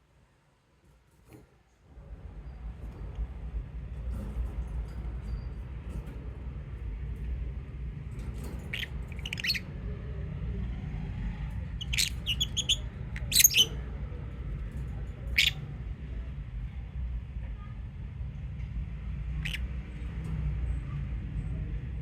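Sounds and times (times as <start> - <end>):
low background rumble: 1.7 - 22.0
birds chirping and squawking: 7.2 - 9.8, 11.4 - 15.9, 19.2 - 20.2.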